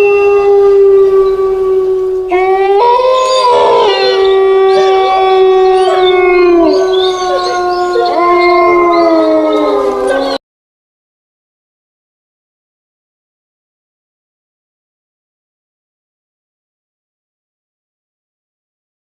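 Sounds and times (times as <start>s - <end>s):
eerie held wail: 0.0s - 10.4s
wailing howls sliding in pitch: 0.0s - 10.4s.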